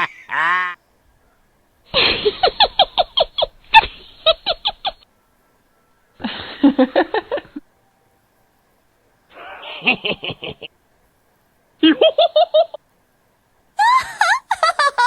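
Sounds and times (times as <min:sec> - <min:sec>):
choppy laughter: 0:00.0 - 0:00.8, 0:01.9 - 0:05.0, 0:09.4 - 0:10.7, 0:11.8 - 0:12.8, 0:13.8 - 0:15.0.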